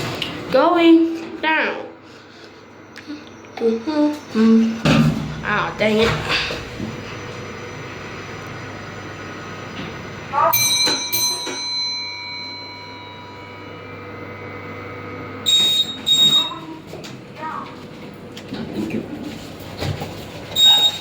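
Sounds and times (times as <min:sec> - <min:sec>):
lift motor hum: 0:00.0 - 0:21.0
loud ringing strikes: 0:10.3 - 0:16.8.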